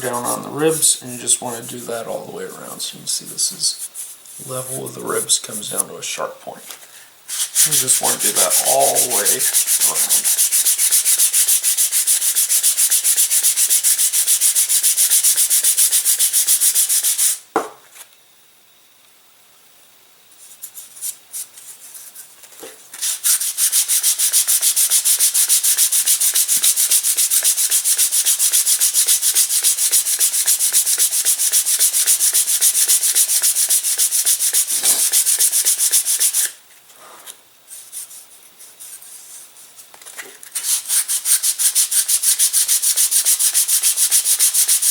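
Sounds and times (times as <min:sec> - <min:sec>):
sandpaper rasping on wood: 0:07.3 - 0:17.4, 0:23.0 - 0:36.5, 0:40.6 - 0:44.9.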